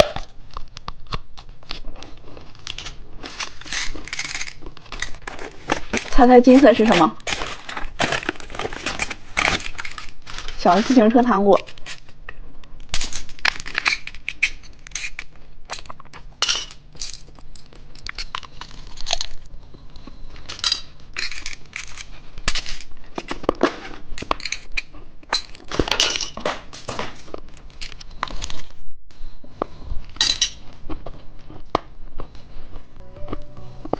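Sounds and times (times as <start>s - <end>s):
plastic packaging crinkling: 0.0s - 12.2s, 12.8s - 16.2s, 17.1s - 19.6s.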